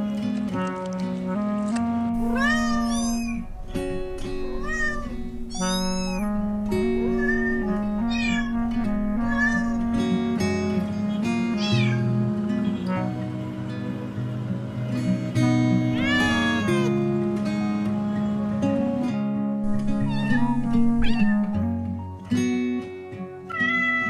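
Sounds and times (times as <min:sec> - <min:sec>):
gentle background music: 0:00.0 - 0:24.0
cat meowing: 0:02.2 - 0:10.1, 0:11.4 - 0:12.2, 0:16.0 - 0:17.0, 0:19.7 - 0:21.7, 0:23.5 - 0:24.0.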